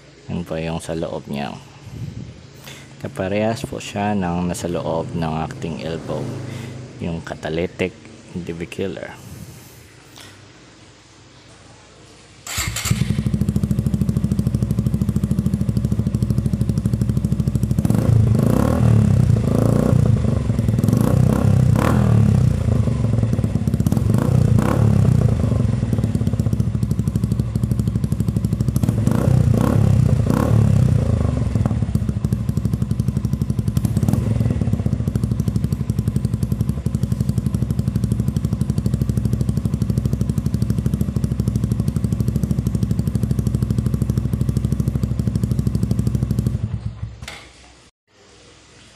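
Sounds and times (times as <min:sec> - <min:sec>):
motorcycle engine idling and revving: 0:03.8 - 0:07.6, 0:12.5 - 0:47.3.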